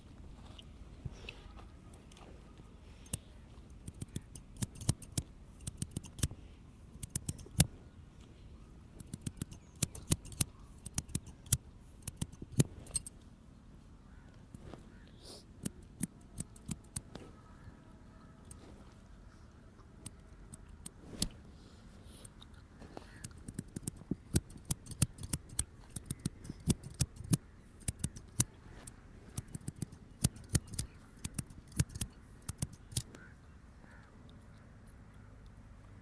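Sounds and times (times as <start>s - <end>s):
scissors snipping: 3.0s - 6.3s, 7.0s - 7.7s, 9.0s - 13.1s, 15.6s - 17.2s, 23.0s - 33.1s.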